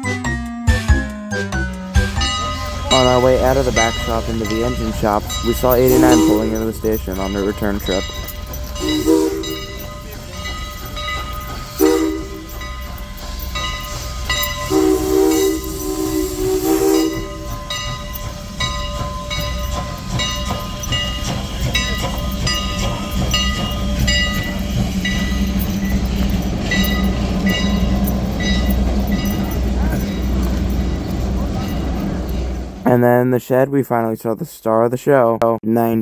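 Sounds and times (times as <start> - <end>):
train rumbling: 0.0 - 33.7
steam locomotive whistle blasts: 1.4 - 25.4.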